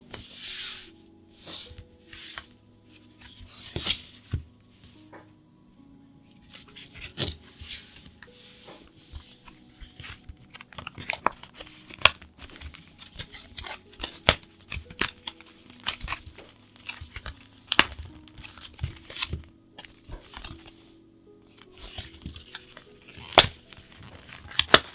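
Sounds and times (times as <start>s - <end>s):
plastic packaging tearing and crinkling: 9.1s - 20.8s, 21.6s - 24.9s.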